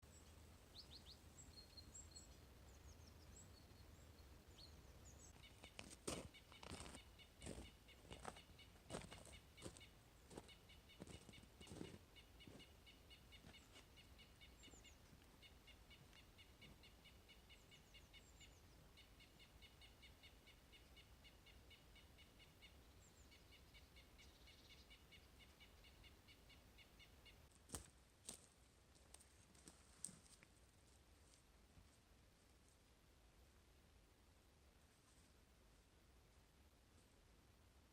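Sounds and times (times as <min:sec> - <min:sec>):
small birds chirping: 0:00.0 - 0:27.8.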